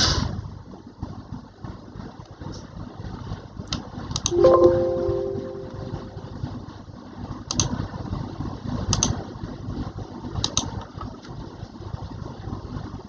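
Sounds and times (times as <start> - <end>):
ringing tone: 4.4 - 6.4
low machine rumble: 4.4 - 6.9.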